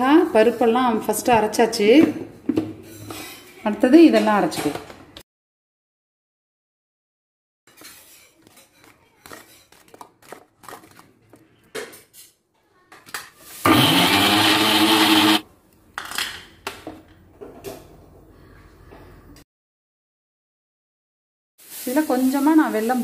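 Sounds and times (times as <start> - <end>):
mixer grinder motor running: 13.6 - 15.4.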